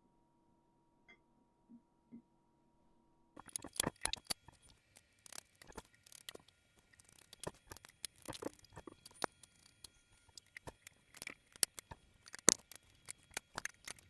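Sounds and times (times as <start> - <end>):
metal tools clicking and scraping: 5.3 - 14.0.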